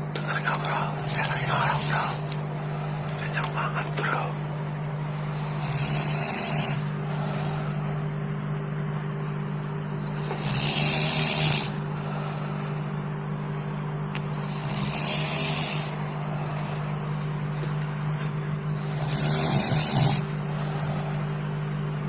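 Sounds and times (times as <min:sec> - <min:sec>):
steady low hum: 0:00.0 - 0:22.0
person snoring: 0:00.2 - 0:04.4, 0:05.1 - 0:08.1, 0:09.9 - 0:12.9, 0:14.3 - 0:17.7, 0:18.7 - 0:21.4.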